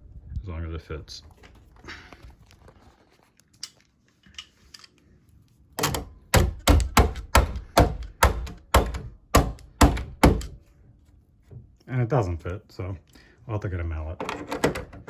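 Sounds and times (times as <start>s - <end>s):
hammer knocking into wood: 5.8s - 10.6s.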